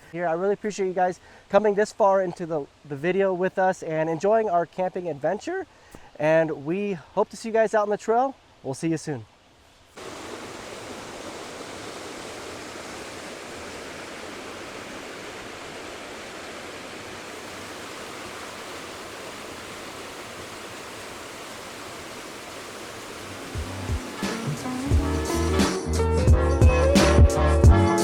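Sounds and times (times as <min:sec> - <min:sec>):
waterfall rushing: 0:10.0 - 0:26.1.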